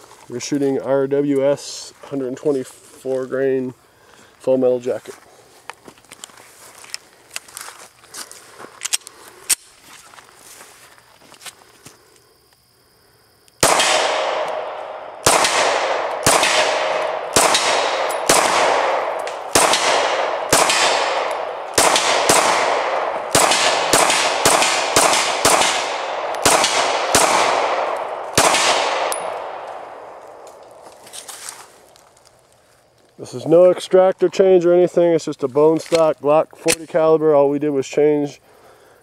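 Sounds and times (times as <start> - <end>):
pistol shots echoing: 13.6 - 30.8.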